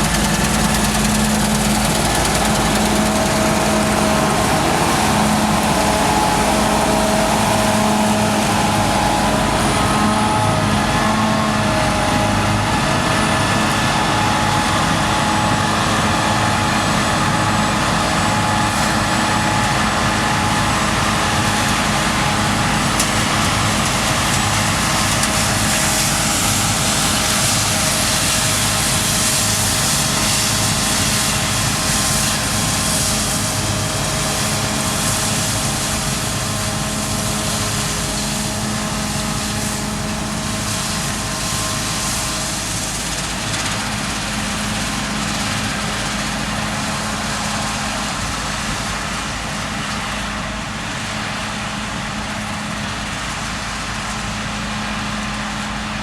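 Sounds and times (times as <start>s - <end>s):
combine harvester running: 0.0s - 56.0s.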